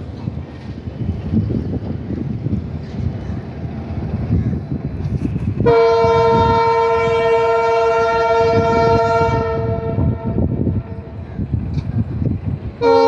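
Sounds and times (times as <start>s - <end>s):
train rumbling: 0.0s - 13.0s
locomotive air horn blast: 5.6s - 11.2s, 12.8s - 13.0s.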